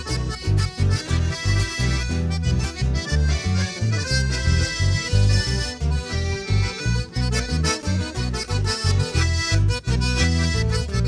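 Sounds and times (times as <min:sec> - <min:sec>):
accordion melody: 0:00.0 - 0:11.0
pulsing bass: 0:00.0 - 0:11.0.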